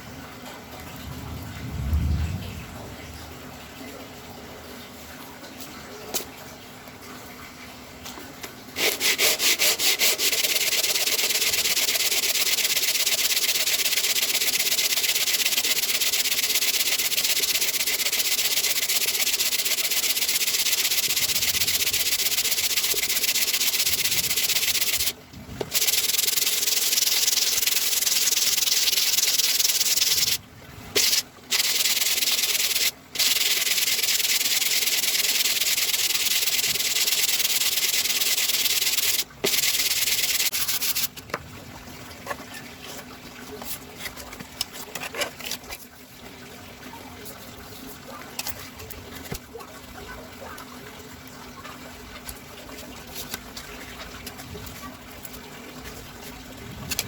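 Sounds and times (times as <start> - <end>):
sandpaper rubbing on wood: 8.8 - 25.1, 25.7 - 30.4, 31.0 - 41.1.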